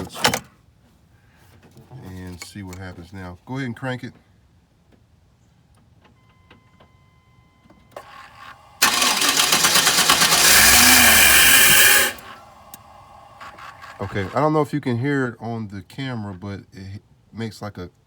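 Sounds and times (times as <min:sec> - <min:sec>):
starter cranking engine: 0:08.0 - 0:14.4.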